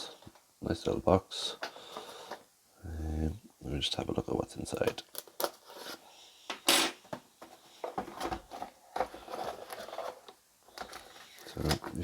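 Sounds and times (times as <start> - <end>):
packaging rustling: 8.0 - 12.0.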